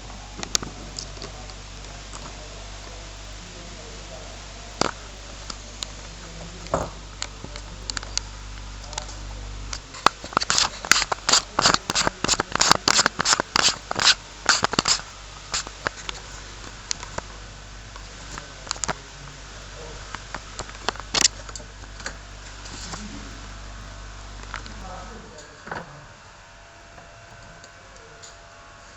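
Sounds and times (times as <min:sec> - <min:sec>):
low hum: 0:00.0 - 0:28.9
hand tools clicking and scraping: 0:08.9 - 0:17.3.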